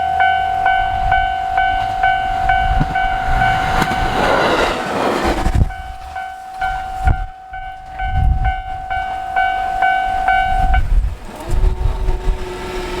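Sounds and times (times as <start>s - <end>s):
level crossing alarm bell: 0.0s - 4.2s, 5.6s - 11.1s
low rumble of passing train: 0.0s - 13.0s.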